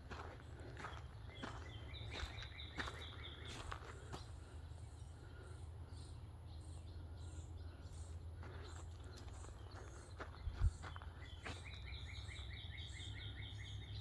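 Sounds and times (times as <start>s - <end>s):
footsteps clicking: 0.0s - 4.3s
bird singing: 0.0s - 14.0s.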